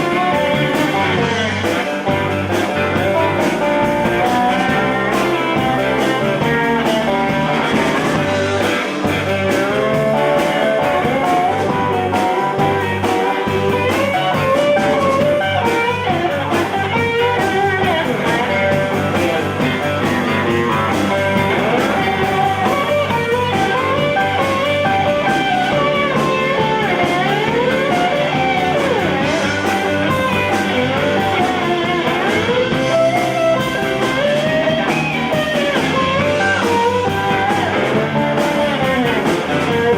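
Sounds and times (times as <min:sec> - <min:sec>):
blues band playing: 0:00.0 - 0:39.9
guitar lead with bent notes: 0:00.0 - 0:39.9.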